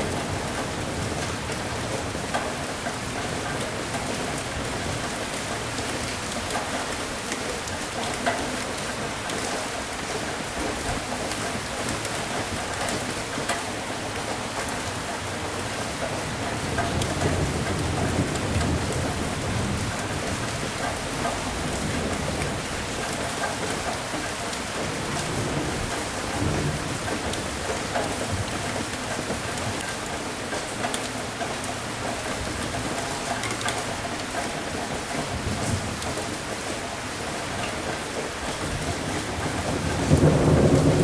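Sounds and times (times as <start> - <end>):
heavy rain falling: 0.0 - 41.0
low rolling thunder: 16.4 - 23.9, 24.8 - 29.9, 38.3 - 41.0.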